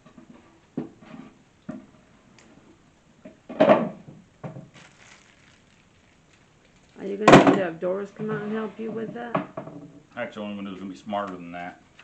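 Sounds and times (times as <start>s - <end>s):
wooden panels knocking and clattering: 3.2s - 4.7s, 7.2s - 10.0s.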